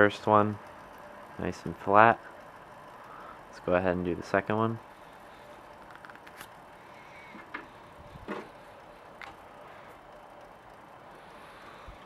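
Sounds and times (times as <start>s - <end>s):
plastic parts knocking: 7.3s - 7.7s, 8.3s - 8.6s.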